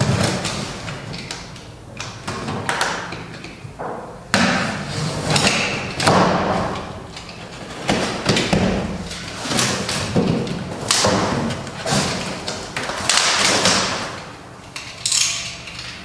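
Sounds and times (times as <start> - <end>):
cardboard box rustling and scraping: 7.6 - 12.7.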